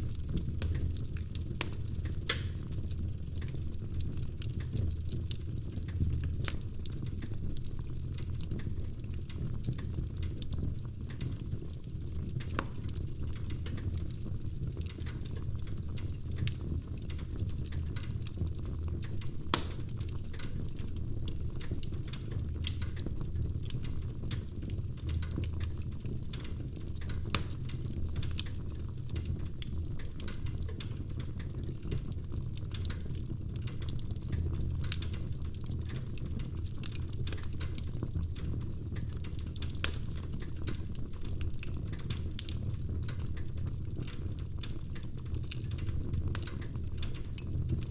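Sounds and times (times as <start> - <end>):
fire popping: 0.0 - 47.9
wood fire crackling: 0.0 - 47.9.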